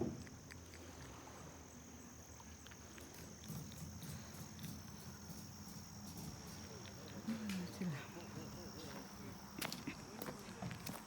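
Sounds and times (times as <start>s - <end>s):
insects trilling: 0.1s - 11.0s
distant voices murmuring: 2.8s - 11.0s.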